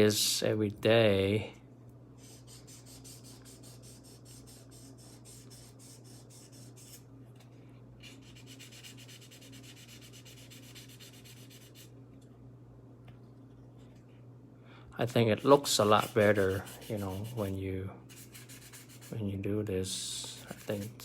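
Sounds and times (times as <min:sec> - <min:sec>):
sandpaper rubbing on metal: 0:08.0 - 0:11.9, 0:15.4 - 0:19.2, 0:20.4 - 0:21.0.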